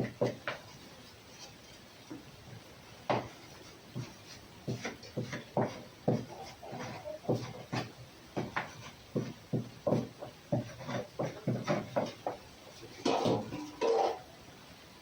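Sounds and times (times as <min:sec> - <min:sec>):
light irregular knocks: 0:03.1 - 0:14.0.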